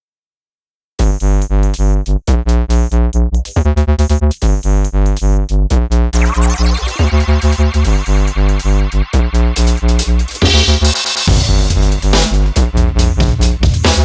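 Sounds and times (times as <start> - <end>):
electronic music with heavy bass: 3.7 - 14.0
rising synth sweep: 6.2 - 12.0.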